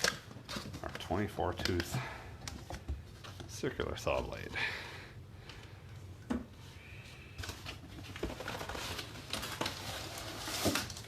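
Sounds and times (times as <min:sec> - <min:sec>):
cardboard rustling: 0:07.4 - 0:11.0.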